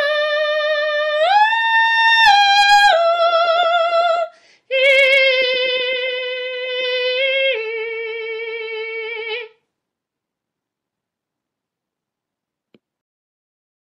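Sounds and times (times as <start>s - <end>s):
woman singing wordless notes: 0.0s - 9.6s.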